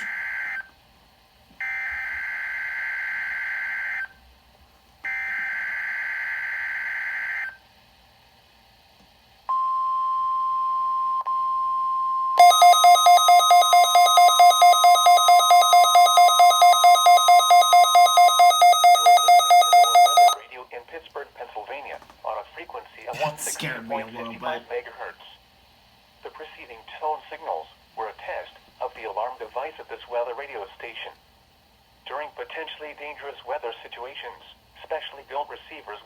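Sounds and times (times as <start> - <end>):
steady warning alarm tone: 10.8 - 20.4
alert receiver beeping: 12.4 - 20.4.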